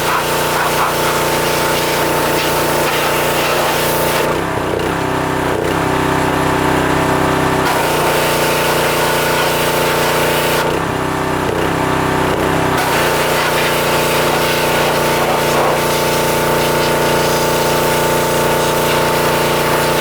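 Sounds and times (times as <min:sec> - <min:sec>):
spray wand hissing: 0:00.0 - 0:04.3, 0:12.9 - 0:20.0
small engine running: 0:00.0 - 0:20.0.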